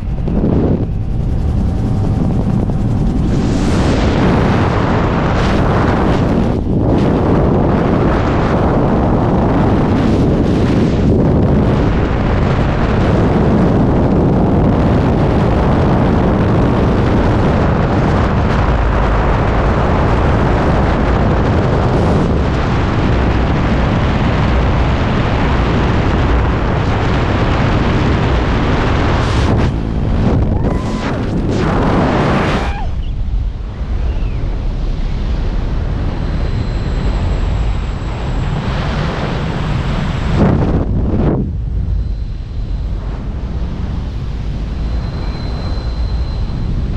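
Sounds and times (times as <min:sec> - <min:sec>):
wind buffeting microphone: 0:00.0 - 0:46.9
faint wavering whistle: 0:32.6 - 0:34.6, 0:36.0 - 0:38.3, 0:41.9 - 0:42.9, 0:44.7 - 0:46.8.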